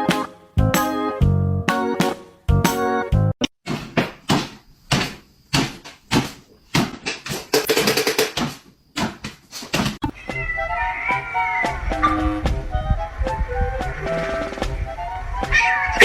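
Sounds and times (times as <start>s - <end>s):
rattle of clicks: 7.1s - 8.4s.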